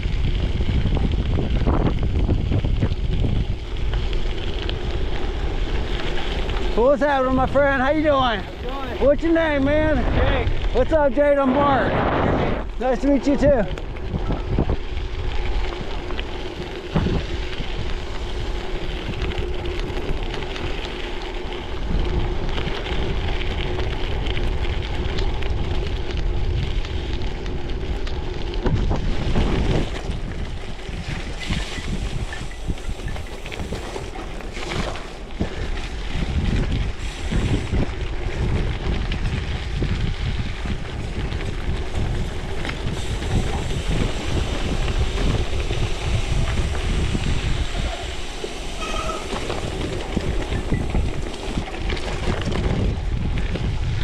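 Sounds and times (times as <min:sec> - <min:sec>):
bike jolting over bumps: 0:00.0 - 0:54.0
bike tyres crunching on gravel: 0:00.0 - 0:54.0
wind buffeting microphone: 0:00.0 - 0:54.0.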